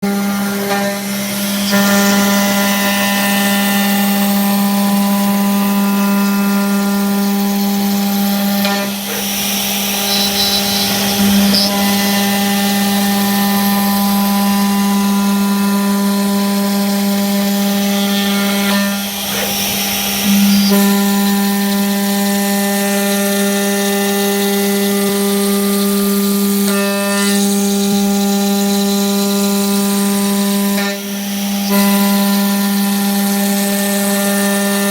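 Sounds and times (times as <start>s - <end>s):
router spindle whine: 0.0s - 34.9s
hiss of bit cutting acrylic: 0.6s - 5.4s, 7.2s - 14.9s, 16.6s - 21.7s, 30.8s - 33.5s.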